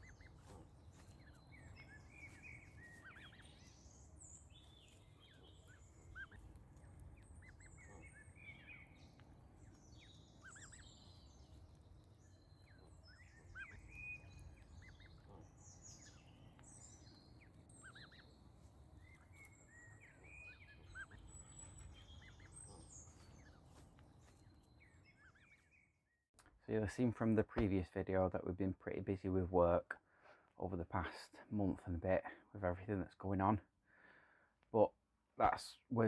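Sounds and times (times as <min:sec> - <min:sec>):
birds chirping and trilling: 0:00.0 - 0:25.9.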